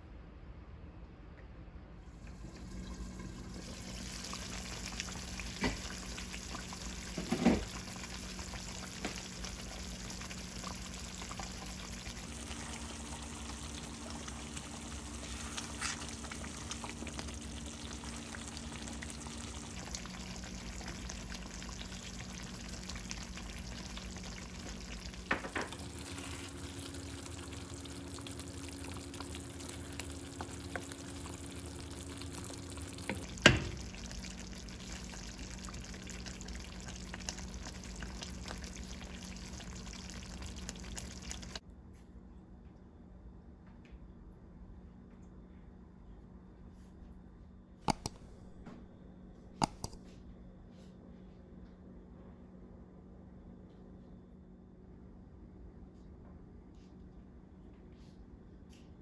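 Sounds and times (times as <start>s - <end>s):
food sizzling in a pan: 2.3s - 41.6s.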